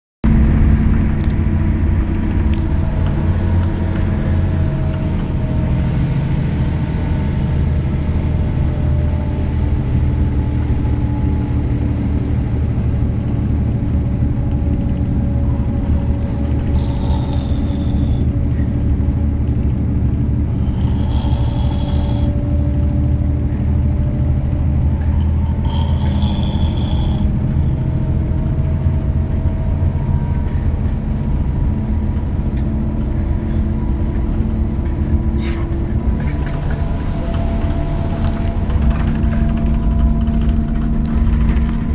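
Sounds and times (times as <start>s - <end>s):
vehicle low rumble: 0.2s - 41.9s
man snoring: 16.2s - 18.4s, 20.4s - 22.5s, 25.2s - 27.8s.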